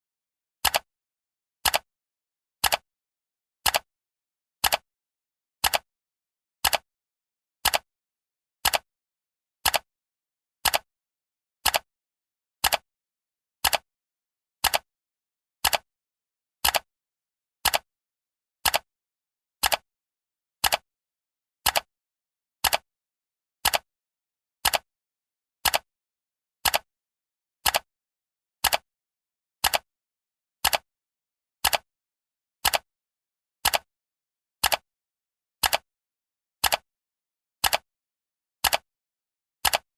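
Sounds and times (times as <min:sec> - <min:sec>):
clock ticking: 0:19.6 - 0:19.8, 0:20.6 - 0:20.8, 0:29.6 - 0:29.8, 0:35.6 - 0:35.8, 0:36.6 - 0:36.8, 0:37.6 - 0:37.8, 0:39.6 - 0:39.9.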